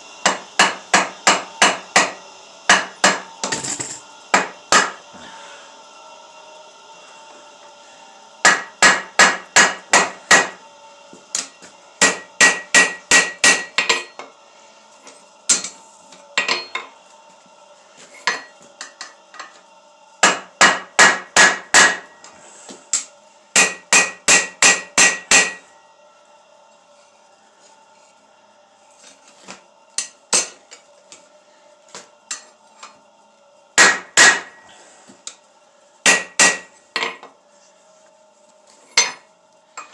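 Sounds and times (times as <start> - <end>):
hammer striking steel on anvil: 0.2 - 5.0, 8.4 - 10.6, 11.3 - 14.2, 15.5 - 15.8, 16.4 - 16.9, 20.2 - 22.1, 22.9 - 25.6, 30.0 - 30.6, 33.8 - 34.6, 36.0 - 37.3.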